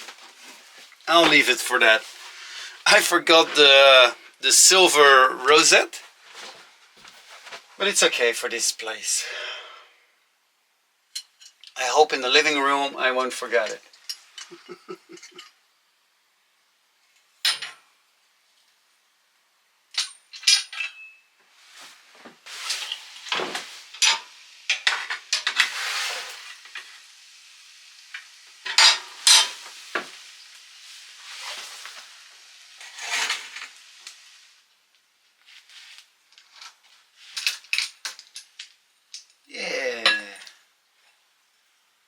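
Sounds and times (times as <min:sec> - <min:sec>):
metal objects clinking: 0:19.9 - 0:21.3, 0:28.6 - 0:29.7.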